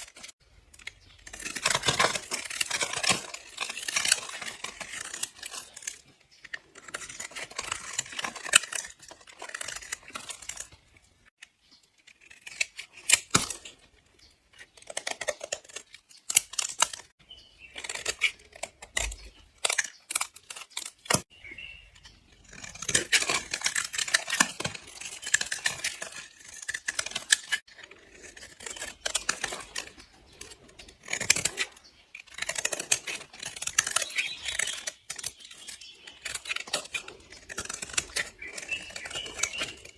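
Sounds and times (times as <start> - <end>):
blade slicing through soap: 1.2 - 10.8, 22.3 - 39.9.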